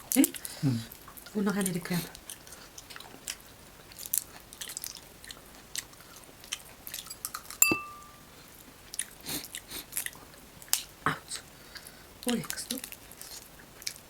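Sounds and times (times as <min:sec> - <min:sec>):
chewing crunchy crab shell: 0:02.0 - 0:07.6, 0:08.8 - 0:10.9, 0:12.4 - 0:14.0
sharp clink on plate: 0:07.6 - 0:08.2.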